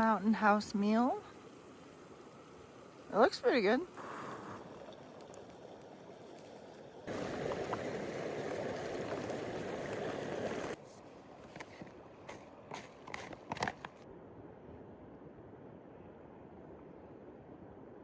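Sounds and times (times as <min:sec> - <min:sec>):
water pouring into pouch: 0:03.9 - 0:10.8.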